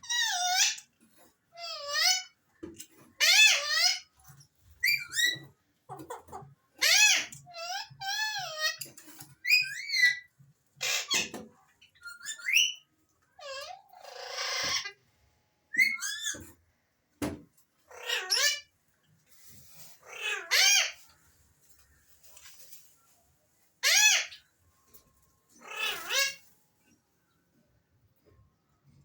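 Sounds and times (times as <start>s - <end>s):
parakeet whistles and squawks: 0.0s - 0.9s, 1.5s - 2.4s, 3.2s - 5.6s, 6.8s - 15.0s, 15.7s - 16.5s, 17.9s - 18.7s, 19.8s - 21.1s, 23.8s - 24.5s, 25.6s - 26.5s.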